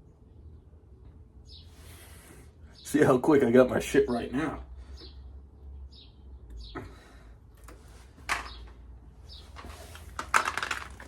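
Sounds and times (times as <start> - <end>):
faint scrapes and rustles: 9.4 - 11.0.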